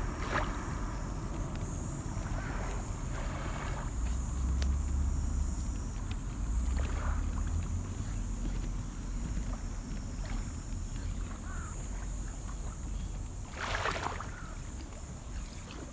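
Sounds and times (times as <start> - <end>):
steady high-pitched hiss: 0.0 - 6.7
wind buffeting microphone: 0.0 - 9.6.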